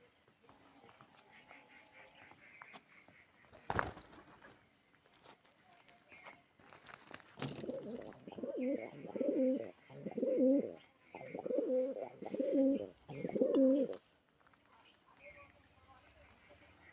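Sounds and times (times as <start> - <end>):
pigeon cooing: 7.4 - 14.0.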